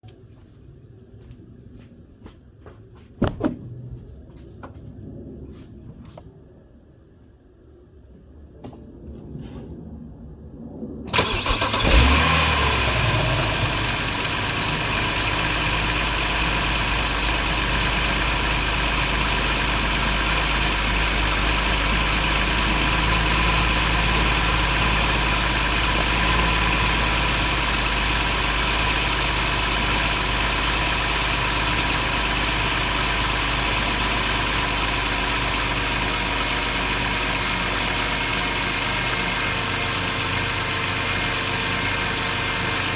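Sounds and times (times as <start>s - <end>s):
car engine starting and idling: 11.1s - 42.9s.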